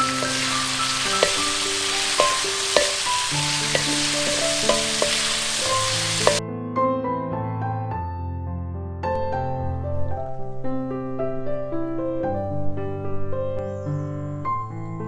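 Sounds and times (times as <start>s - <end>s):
food sizzling: 0.0s - 6.4s
gentle piano music: 0.0s - 6.4s, 9.0s - 15.0s.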